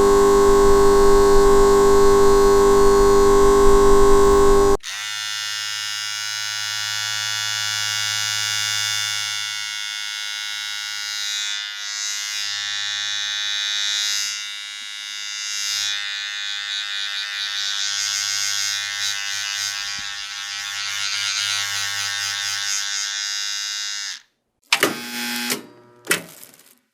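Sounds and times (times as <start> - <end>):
choppy buzz: 0.0 - 4.8
traffic light electric buzz: 0.0 - 4.8.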